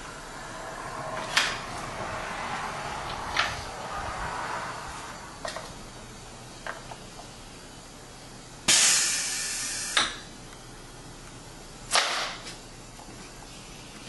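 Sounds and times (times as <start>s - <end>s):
short puff of air: 8.7s - 10.0s
compressed air hissing: 8.7s - 10.2s.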